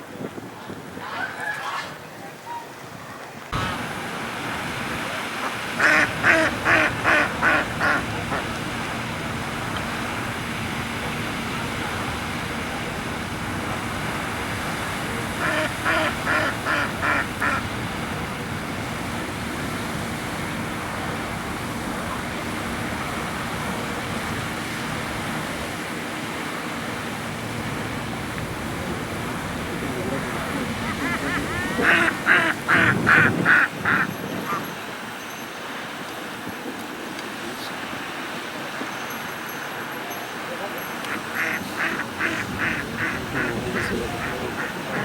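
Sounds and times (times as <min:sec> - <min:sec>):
steady background noise: 0:00.0 - 0:45.0
waterfowl calling: 0:03.6 - 0:11.7, 0:14.9 - 0:17.7, 0:29.3 - 0:34.9, 0:40.7 - 0:45.0.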